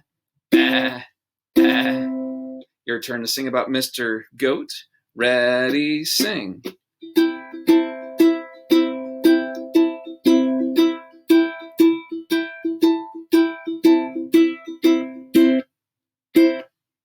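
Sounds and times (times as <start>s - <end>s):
ukulele strumming: 1.6s - 2.6s, 5.5s - 15.6s, 16.4s - 16.7s.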